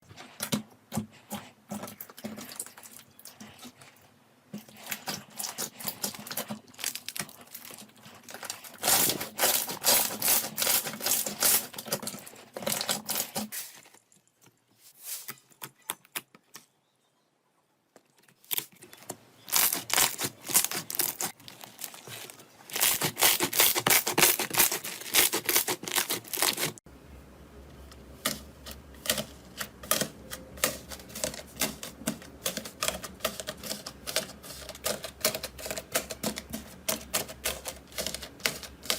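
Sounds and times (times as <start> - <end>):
slime crackling and popping: 19.5 - 26.8.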